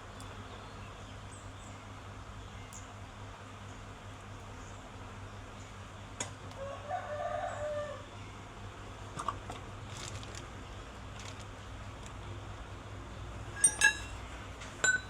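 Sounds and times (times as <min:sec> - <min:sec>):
rooster crowing: 0:06.6 - 0:08.2
clinks and ticks: 0:13.6 - 0:14.2.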